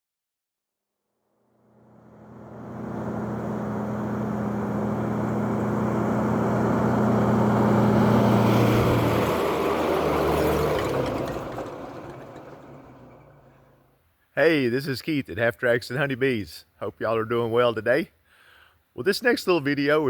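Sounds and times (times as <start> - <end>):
engine running: 1.5 - 13.9.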